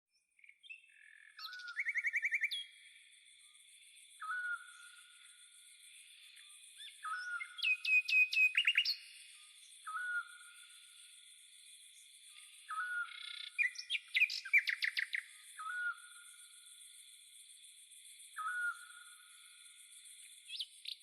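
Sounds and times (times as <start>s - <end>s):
bird chirps and trills: 0.4s - 2.8s, 4.2s - 5.1s, 6.8s - 9.2s, 9.8s - 10.7s, 12.0s - 16.3s, 18.4s - 19.2s.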